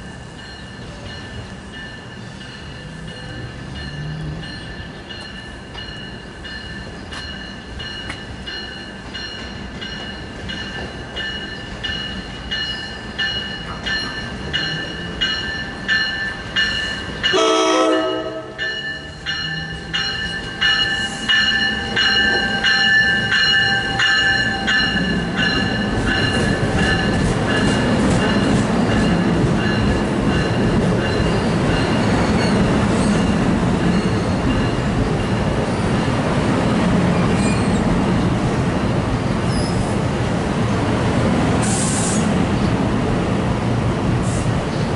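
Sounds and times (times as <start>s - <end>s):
train running and wheel noise: 0.0s - 44.9s
train horn blast: 17.3s - 18.7s.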